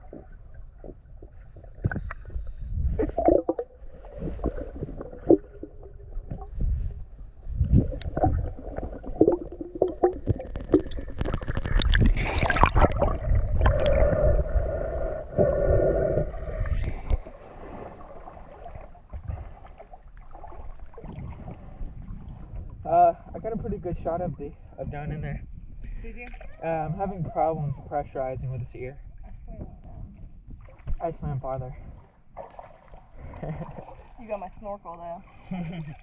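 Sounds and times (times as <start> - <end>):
underwater rush and gurgle: 0.0 - 25.0
small underwater clicks and knocks: 0.1 - 2.6, 9.2 - 14.0, 29.6 - 31.0.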